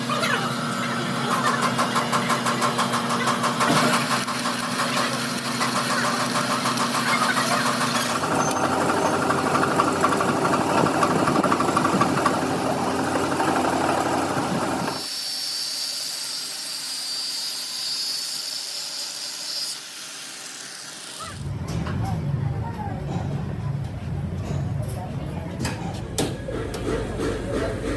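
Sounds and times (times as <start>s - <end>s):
engine knocking: 1.4s - 14.9s.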